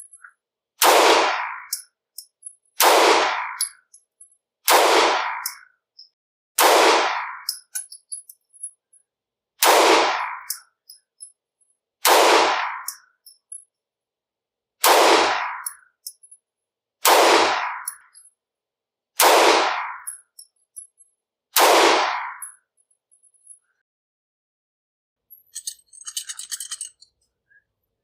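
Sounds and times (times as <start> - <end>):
pistol shots: 0.8 - 1.6, 2.8 - 3.6, 4.7 - 5.4, 6.6 - 7.4, 9.6 - 10.5, 12.0 - 13.0, 14.8 - 15.6, 17.0 - 17.8, 19.2 - 20.0, 21.6 - 22.4.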